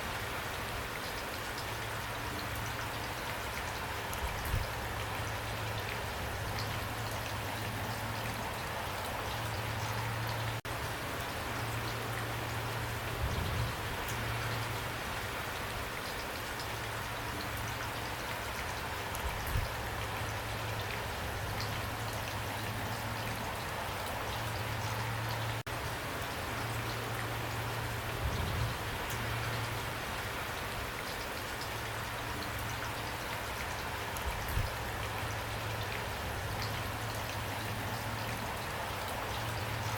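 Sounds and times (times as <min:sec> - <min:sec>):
rain splashes: 0:00.0 - 0:39.9
steady rain patter: 0:00.0 - 0:39.9.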